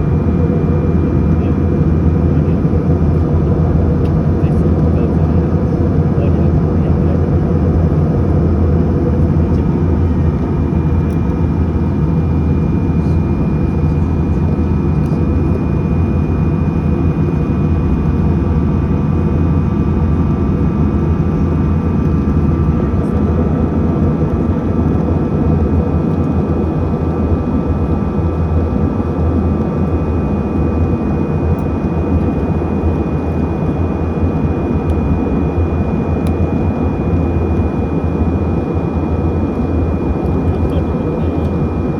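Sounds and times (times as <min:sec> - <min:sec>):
airliner cabin low rumble: 0:00.0 - 0:41.9
faint steady whining tones: 0:09.4 - 0:41.9.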